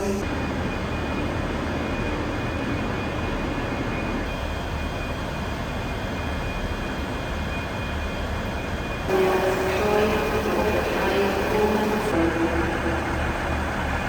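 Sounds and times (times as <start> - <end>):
diesel train engine running: 9.0 - 14.0.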